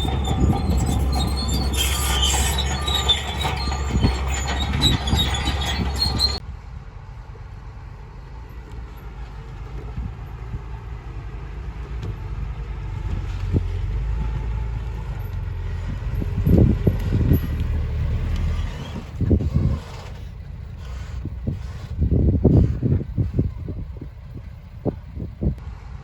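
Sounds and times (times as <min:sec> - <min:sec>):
squealing metallic track clatter: 0:00.0 - 0:06.4, 0:15.0 - 0:20.5
heavy machinery engine rumble: 0:00.0 - 0:26.0.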